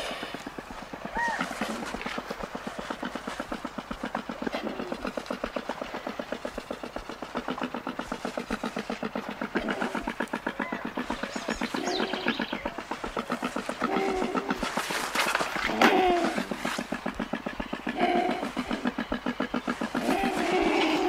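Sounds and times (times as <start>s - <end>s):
short high bird calls: 0.0s - 2.0s, 10.5s - 14.8s
condor low clucking pulses: 0.0s - 21.0s.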